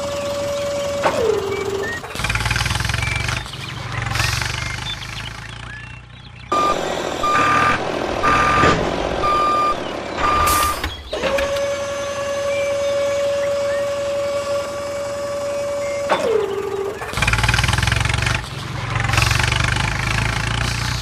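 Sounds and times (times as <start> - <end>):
engine running: 0.0 - 21.0
reversing alarm beeping: 6.5 - 17.0.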